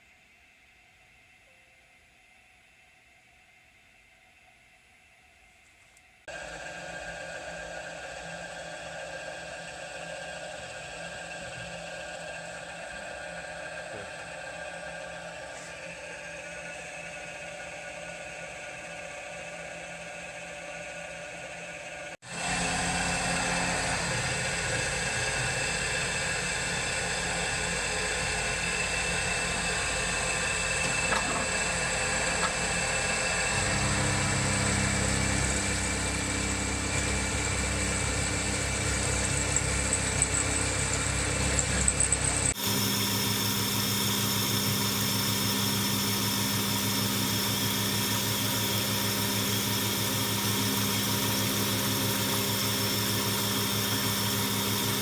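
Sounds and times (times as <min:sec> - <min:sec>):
cnc machine whine and hum: 0:00.0 - 0:55.0.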